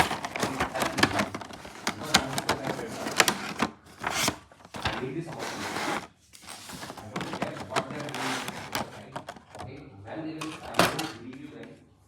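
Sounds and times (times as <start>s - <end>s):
packaging rustle: 0.0s - 9.6s
packaging clicks and taps: 0.0s - 9.7s.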